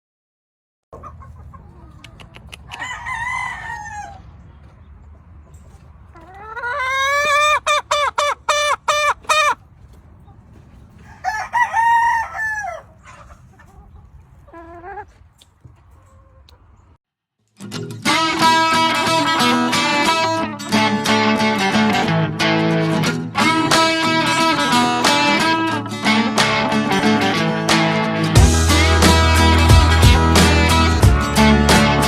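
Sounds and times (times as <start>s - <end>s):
roosters crowing: 1.0s - 16.8s.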